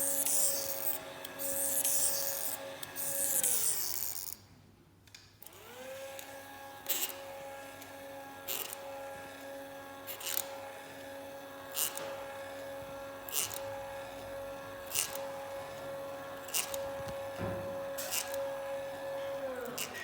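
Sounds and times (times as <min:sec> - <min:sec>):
roller blind motor whining: 0:05.5 - 0:20.0.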